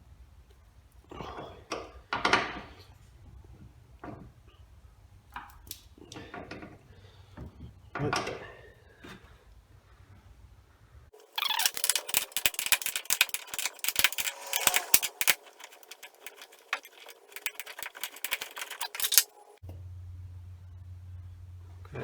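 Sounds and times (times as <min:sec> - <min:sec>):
metallic rattling: 0:11.1 - 0:19.6
hand ratchet clicking: 0:11.2 - 0:19.3.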